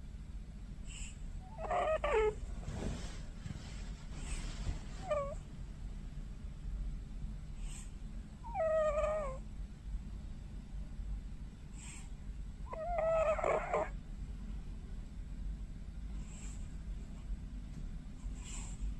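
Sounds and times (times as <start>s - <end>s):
cat snoring with squeaky whine: 0.8s - 2.4s, 5.0s - 5.4s, 7.6s - 9.4s, 11.7s - 14.0s.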